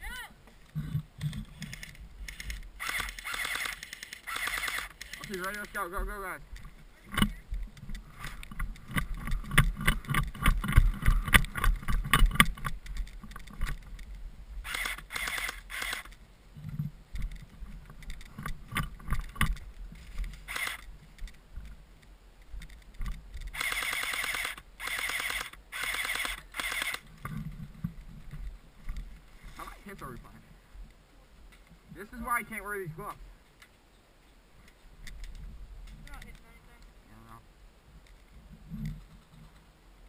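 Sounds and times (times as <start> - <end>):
rustling: 0.4 - 39.8
airsoft guns firing full-auto: 2.8 - 5.0, 23.6 - 27.0.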